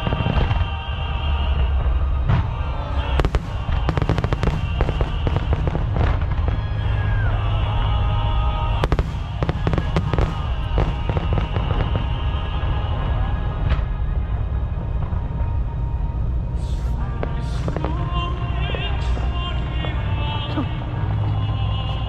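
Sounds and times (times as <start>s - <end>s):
loud music with low rumble: 0.0s - 22.0s
fireworks cracking: 3.1s - 7.5s, 8.7s - 13.9s, 16.6s - 21.3s.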